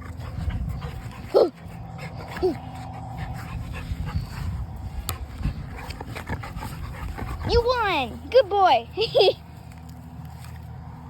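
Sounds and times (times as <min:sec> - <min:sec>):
low rumble: 0:00.0 - 0:08.3.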